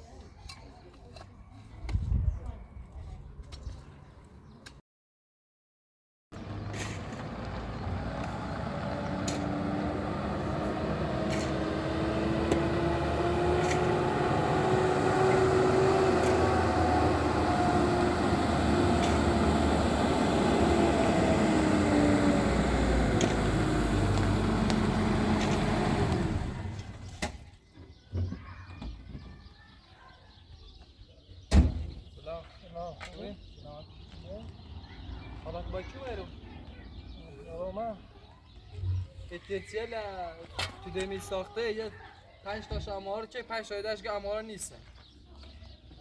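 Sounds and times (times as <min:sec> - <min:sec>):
motor vehicle engine droning: 0:06.4 - 0:27.3.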